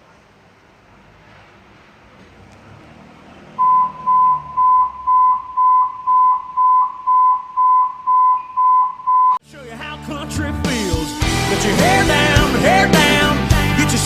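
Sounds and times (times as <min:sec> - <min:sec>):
electronic beeper high tone: 0:03.6 - 0:09.4.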